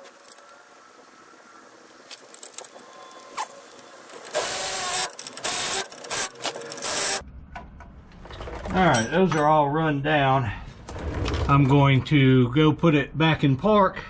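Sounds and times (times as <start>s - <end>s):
power tool whining bursts: 4.3s - 7.2s.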